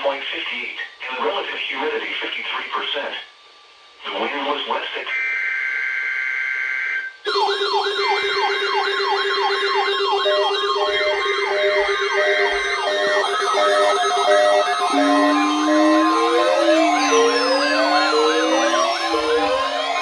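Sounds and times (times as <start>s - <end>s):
electronic wailing sirens: 7.3s - 20.0s
high warble: 7.3s - 20.0s
pulsed beeps: 7.3s - 20.0s
two-tone digital screech: 10.3s - 20.0s.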